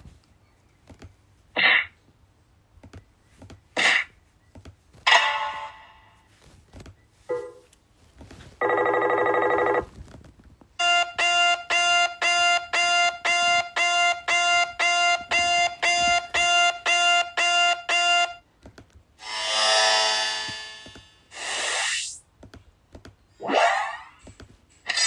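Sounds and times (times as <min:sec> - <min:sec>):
pulsing electronic ringtone: 0:10.8 - 0:18.4.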